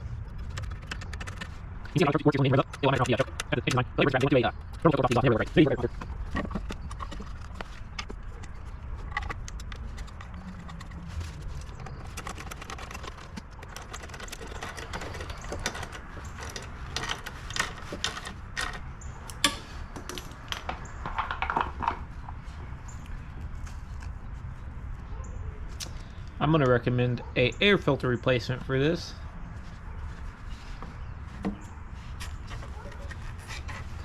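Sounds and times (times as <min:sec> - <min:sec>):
clicks and knocks of tools: 0:11.6 - 0:22.4.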